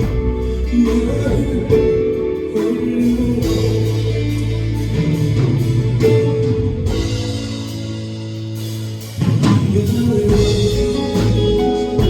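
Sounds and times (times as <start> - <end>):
live band playing pop ballad: 0.0 - 12.0.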